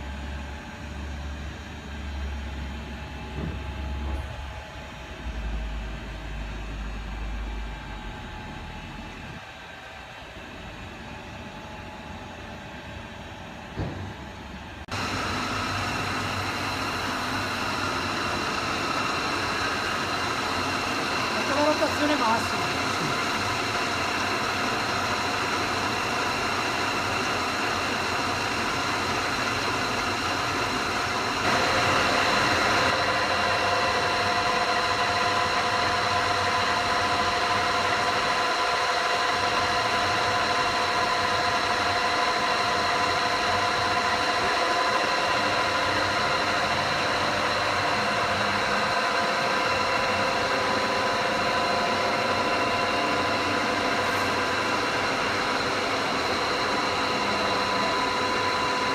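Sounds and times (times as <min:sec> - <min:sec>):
boring machine hum: 0:00.0 - 0:58.9
machine whining tones: 0:02.0 - 0:10.0.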